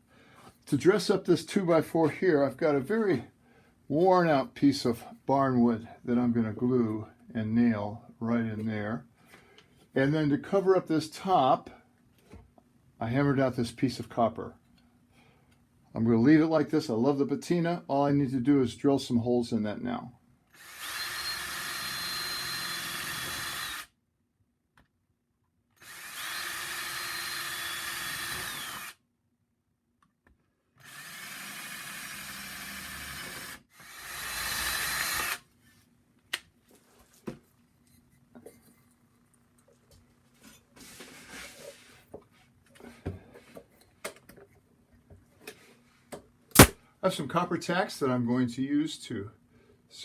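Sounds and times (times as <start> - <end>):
power drill boring through metal: 20.6 - 23.9, 25.8 - 29.0, 30.8 - 35.4.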